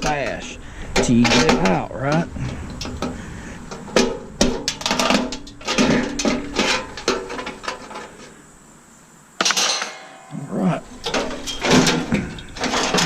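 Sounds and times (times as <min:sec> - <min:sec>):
metallic knocks and clatters: 0:00.0 - 0:08.4, 0:09.4 - 0:13.0.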